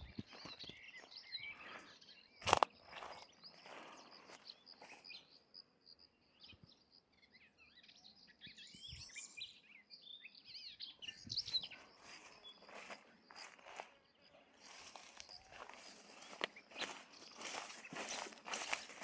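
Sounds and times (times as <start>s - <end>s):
footsteps crunching on ground: 0.0s - 1.8s, 2.4s - 5.2s, 11.4s - 19.0s
small birds chirping: 0.0s - 19.0s.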